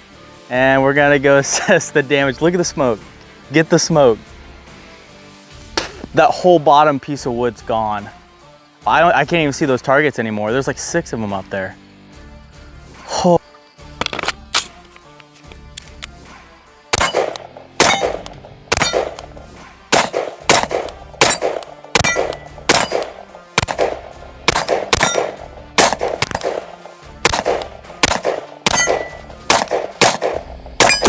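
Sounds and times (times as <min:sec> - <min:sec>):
background music: 0:00.0 - 0:31.0
sharp ringing clangs: 0:17.0 - 0:19.4, 0:20.0 - 0:30.2, 0:30.8 - 0:31.0.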